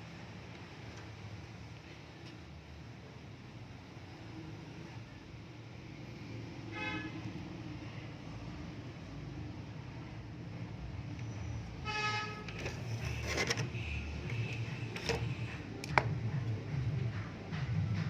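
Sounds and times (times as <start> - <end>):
traffic noise: 0.0 - 18.0
vehicle horn toot: 6.7 - 7.2, 11.8 - 15.6.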